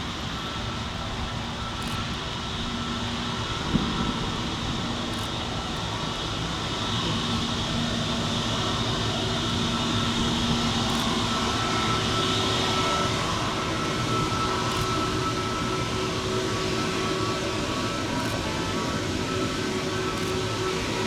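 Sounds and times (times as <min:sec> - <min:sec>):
jet engines running with whine: 0:00.0 - 0:21.0.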